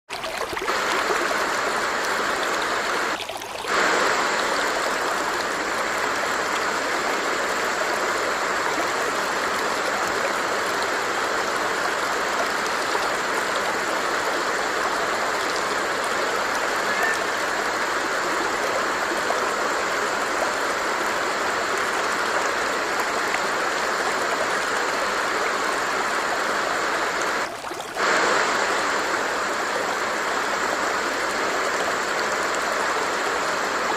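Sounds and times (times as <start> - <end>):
stream water rushing: 0.1 - 33.9.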